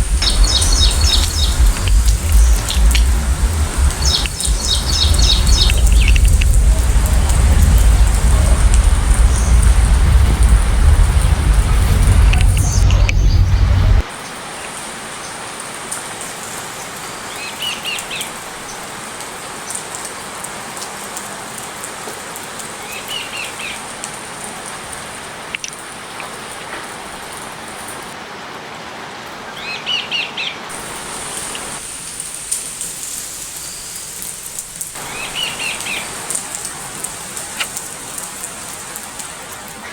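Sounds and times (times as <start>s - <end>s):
bird chirping: 0.0s - 14.0s
steady rainfall: 0.0s - 39.9s.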